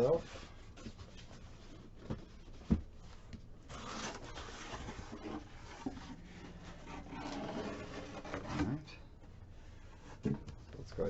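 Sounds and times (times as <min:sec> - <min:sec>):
cardboard rubbing and scraping: 0:03.7 - 0:08.8.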